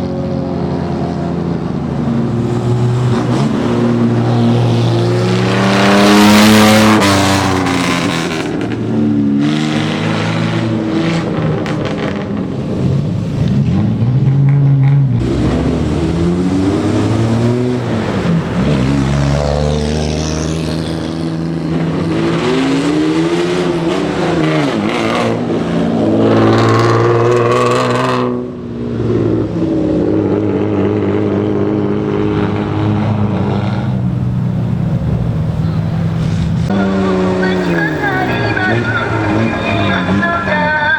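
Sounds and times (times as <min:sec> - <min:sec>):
car engines revving: 0:00.0 - 0:40.9.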